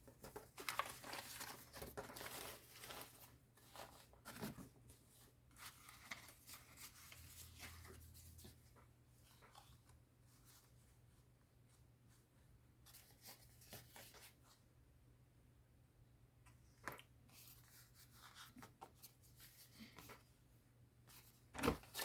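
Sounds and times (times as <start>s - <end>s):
paper rustling and crinkling: 0.0s - 10.8s, 21.1s - 22.0s.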